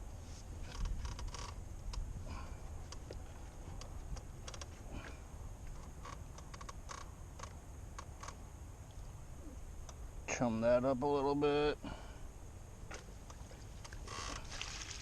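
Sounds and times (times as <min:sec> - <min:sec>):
low steady rumble: 0:00.0 - 0:15.0
small clicks and creaks: 0:00.6 - 0:02.1, 0:02.8 - 0:09.1, 0:12.9 - 0:14.5.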